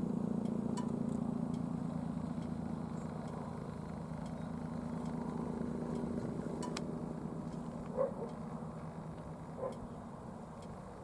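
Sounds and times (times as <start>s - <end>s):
vehicle engine idling hum: 0.0s - 11.0s
faint light ticks: 5.0s - 6.9s, 10.6s - 10.8s.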